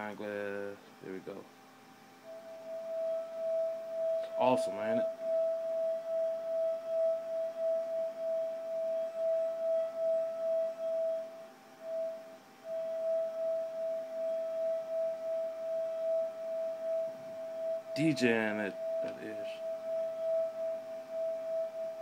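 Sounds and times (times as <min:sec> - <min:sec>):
wine glass rim singing: 0:02.3 - 0:22.0.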